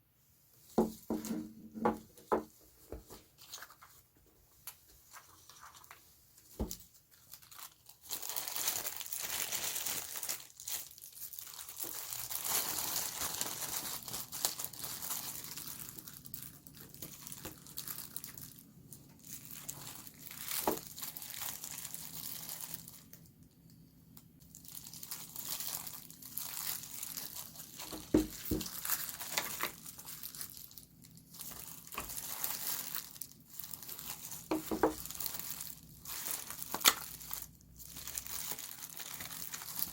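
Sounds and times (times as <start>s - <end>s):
packaging crinkling and tearing: 4.6s - 23.3s, 24.1s - 39.9s.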